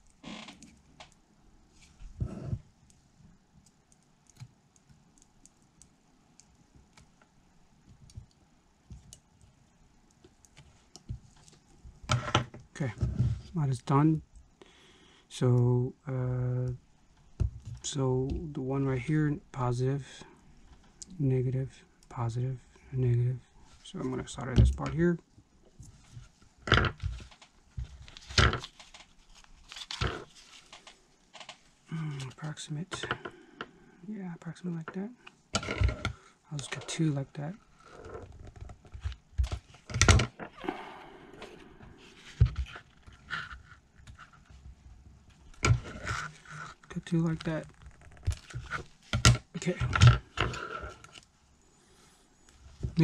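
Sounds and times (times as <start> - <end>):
crinkling scraping bursts: 45.3 - 51.3.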